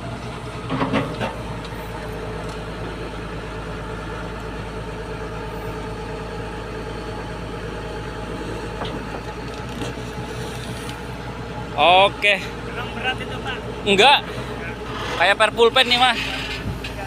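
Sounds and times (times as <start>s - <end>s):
diesel engine idling: 0.0s - 17.0s.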